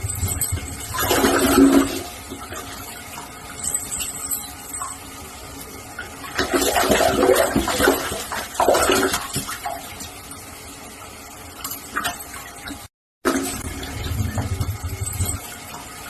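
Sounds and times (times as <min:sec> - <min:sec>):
water sloshing and splashing: 0:00.0 - 0:04.1, 0:06.0 - 0:10.3.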